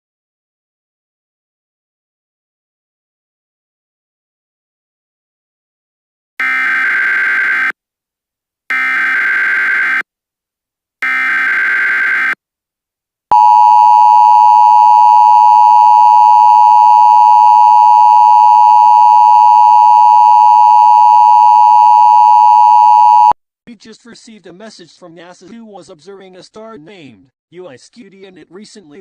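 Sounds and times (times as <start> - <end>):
data tone bursts: 13.3 - 23.4
two-tone attention signal: 13.3 - 23.4.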